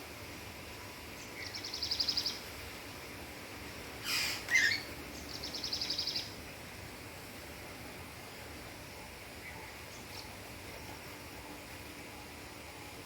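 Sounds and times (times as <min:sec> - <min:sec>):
harsh bird call sweeping down: 0:04.0 - 0:04.9
bird trilling: 0:04.0 - 0:06.3.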